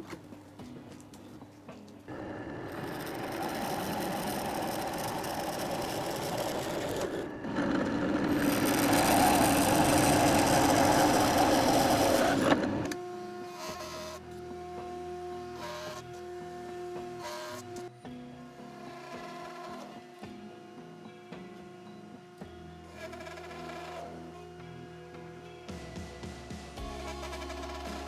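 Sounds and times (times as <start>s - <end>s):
electric power tool motor running: 2.1s - 14.2s
background music: 6.6s - 28.0s.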